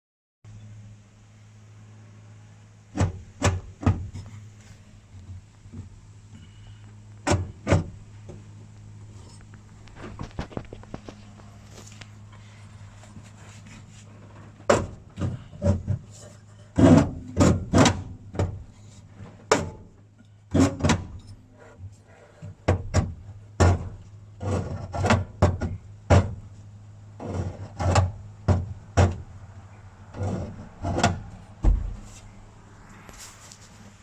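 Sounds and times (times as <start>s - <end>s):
car pedals knocking: 30.9s - 32.1s
deep thud: 31.6s - 32.2s.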